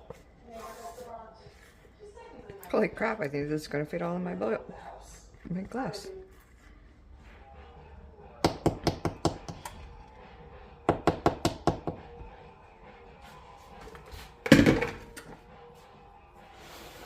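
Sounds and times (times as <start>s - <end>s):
hard knocks in kitchen: 8.4s - 9.6s, 10.8s - 12.2s, 14.4s - 15.1s.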